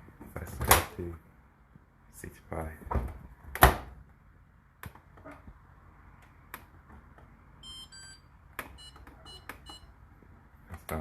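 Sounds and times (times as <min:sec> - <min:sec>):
short electronic beeps: 0:07.6 - 0:09.9.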